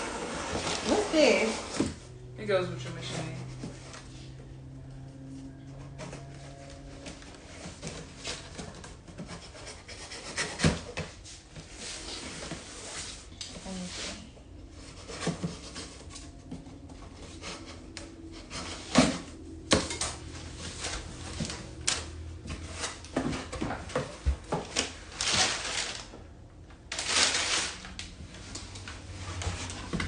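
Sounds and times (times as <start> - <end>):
packaging rustling or tearing: 24.6 - 26.2, 26.9 - 28.2.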